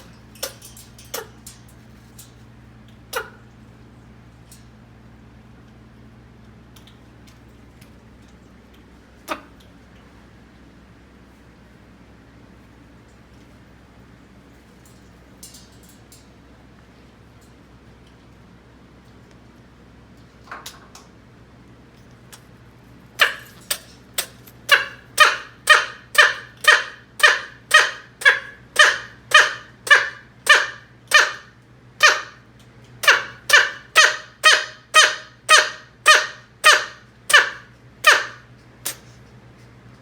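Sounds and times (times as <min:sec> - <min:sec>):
steady low hum: 0:00.0 - 0:40.0
pet sneezing: 0:38.8 - 0:39.2.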